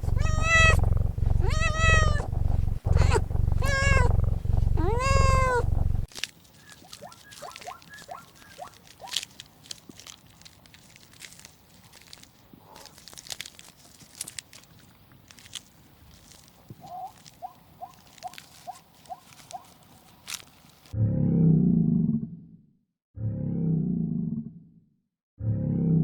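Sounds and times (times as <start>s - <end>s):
irregular crunching clicks: 0.0s - 6.4s.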